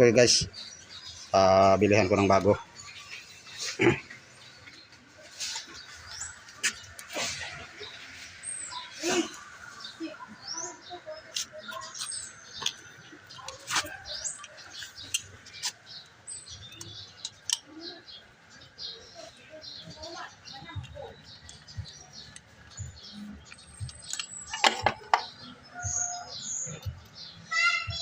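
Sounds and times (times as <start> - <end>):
small birds chirping: 0.0 - 28.0
hand tools clicking and tapping: 16.7 - 17.7, 23.4 - 25.4.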